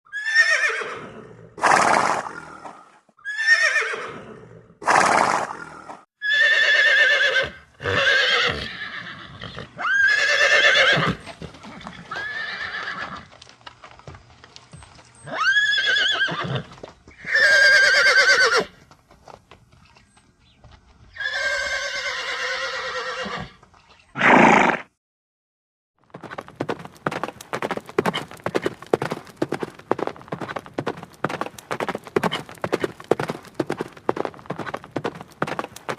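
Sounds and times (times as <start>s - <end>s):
pony whinnying: 0.1s - 2.3s, 3.2s - 4.3s, 4.9s - 13.3s, 15.2s - 18.7s, 21.2s - 23.6s, 24.2s - 24.9s.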